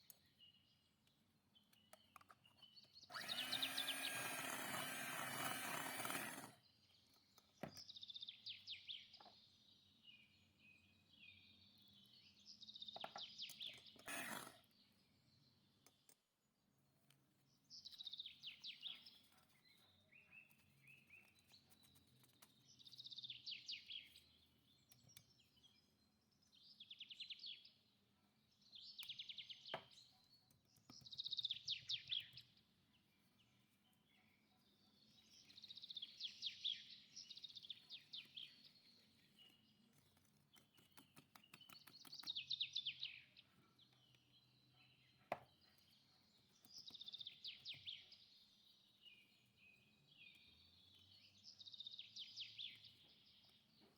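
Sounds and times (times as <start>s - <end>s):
sharp clicks: 14.0s - 14.6s.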